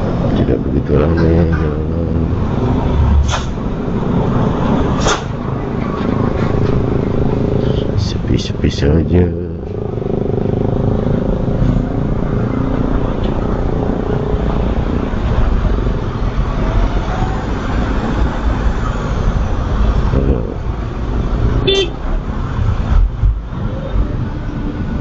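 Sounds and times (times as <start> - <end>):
road and traffic noise: 0.0 - 25.0
horn toot: 21.6 - 22.0.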